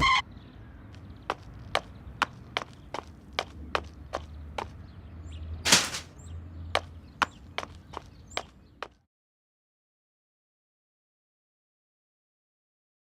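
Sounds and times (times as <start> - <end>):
footsteps: 1.3 - 4.8, 6.8 - 9.0.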